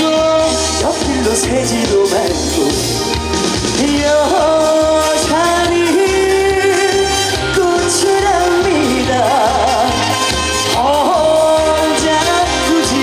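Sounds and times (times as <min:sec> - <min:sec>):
backing music with steady beat: 0:00.0 - 0:13.0
person singing with vibrato: 0:00.0 - 0:13.0.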